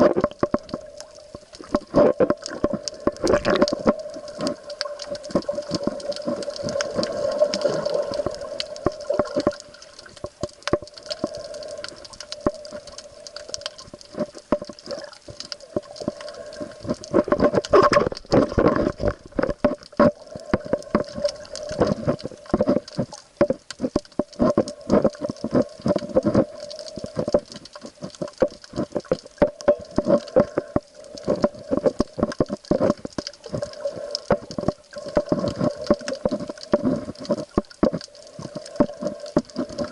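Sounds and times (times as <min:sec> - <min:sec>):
water sounds: 0:00.0 - 0:39.9
sharp clicks and knocks: 0:16.9 - 0:26.4.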